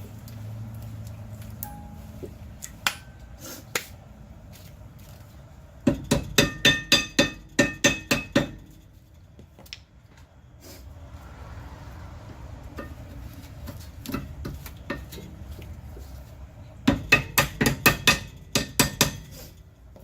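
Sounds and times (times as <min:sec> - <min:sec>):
hammer striking metal: 0:01.6 - 0:02.1, 0:05.8 - 0:08.8, 0:16.9 - 0:19.3.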